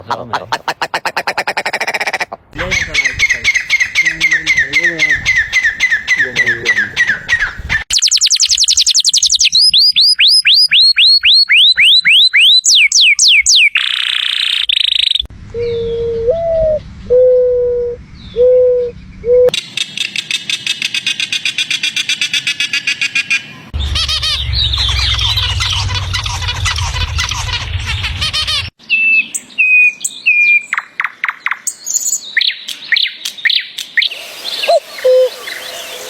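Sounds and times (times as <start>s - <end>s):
low hooting notes: 23.6s - 28.7s
rapid high trill: 23.7s - 28.7s.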